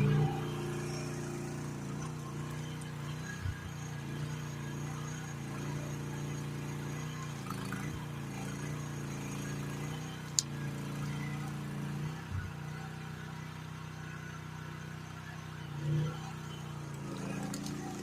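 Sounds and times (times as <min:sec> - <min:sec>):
excavator engine running: 0:15.6 - 0:18.0.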